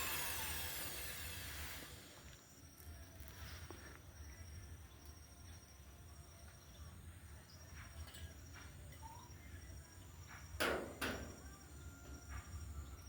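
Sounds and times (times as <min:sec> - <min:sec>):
planer motor spinning down: 0:00.0 - 0:02.2
insects chirping: 0:00.0 - 0:13.0.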